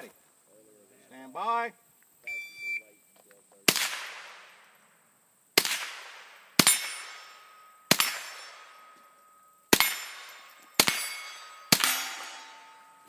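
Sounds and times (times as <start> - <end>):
rifle shots: 3.7 - 4.8, 5.6 - 9.0, 9.7 - 13.0
steel target ringing clang: 6.6 - 13.0.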